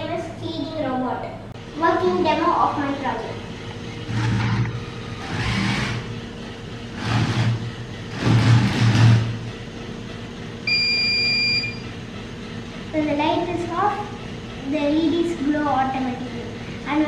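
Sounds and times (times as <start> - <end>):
small gear motors whirring: 4.0 - 6.1
electronic buzzer beep: 10.7 - 11.9.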